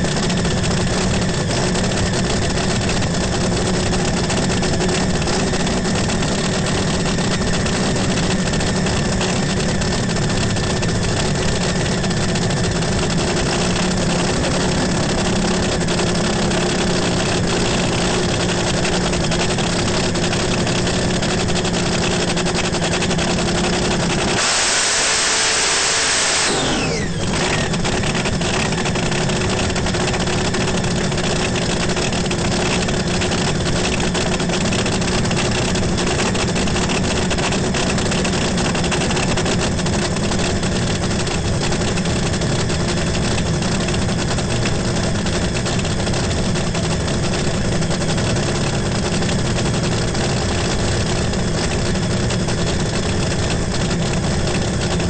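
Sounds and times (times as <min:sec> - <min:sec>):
engine running: 0:00.0 - 0:55.0.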